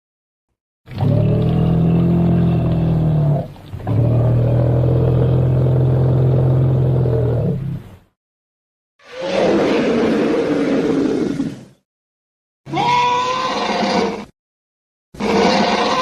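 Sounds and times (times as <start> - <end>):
low monster calls: 0.9 - 7.8.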